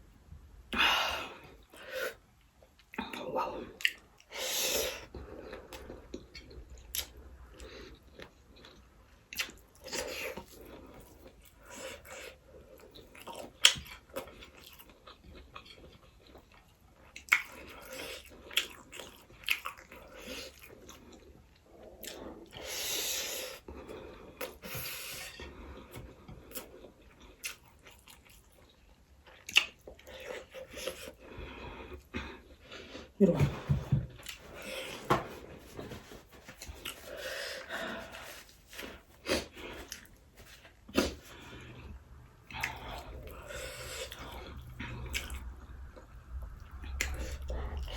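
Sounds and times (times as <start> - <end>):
person chewing food: 0.8 - 47.9
breathing: 37.0 - 38.6.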